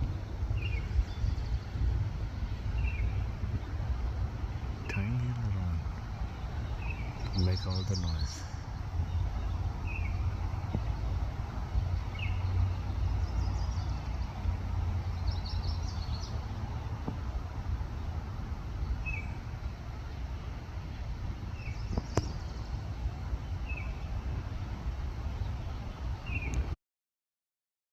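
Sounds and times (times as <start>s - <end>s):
bird chirping: 0.0s - 1.8s, 2.5s - 4.2s, 4.8s - 11.2s, 11.9s - 16.5s, 18.8s - 19.5s, 21.5s - 24.2s, 25.4s - 26.6s
low rumble: 0.0s - 26.5s.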